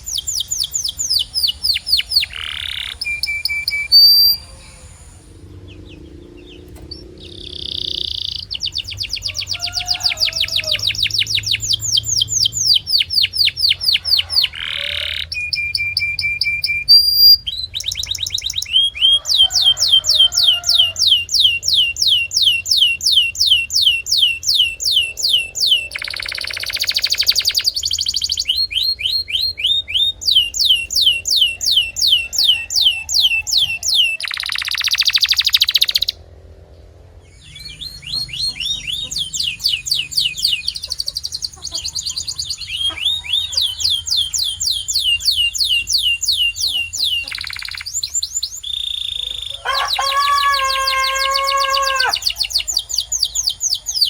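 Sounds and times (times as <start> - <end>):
low buzzing rolls: 0.0 - 9.3, 35.5 - 41.6
canary singing: 0.0 - 36.3, 37.1 - 54.0.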